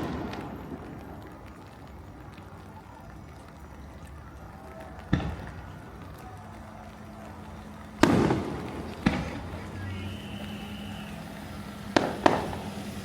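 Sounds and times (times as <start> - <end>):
firework bang with echo: 0.0 - 1.6, 5.1 - 6.2, 8.0 - 13.0
low background noise: 0.0 - 13.0.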